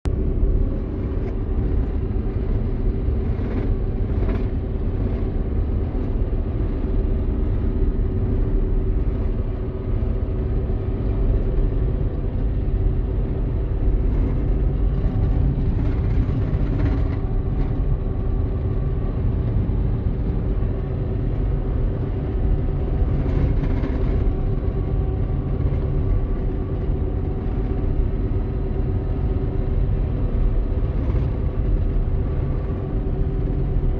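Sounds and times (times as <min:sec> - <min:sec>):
combine harvester diesel engine rumble: 0:00.0 - 0:33.9.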